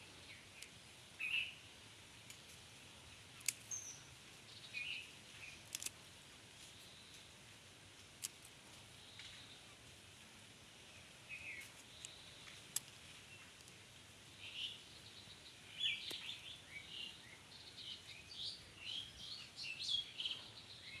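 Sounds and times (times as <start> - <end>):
faint steady hiss: 0.0 - 21.0
small birds chirping: 0.0 - 21.0
sharp clicks: 3.4 - 3.8, 5.7 - 6.0.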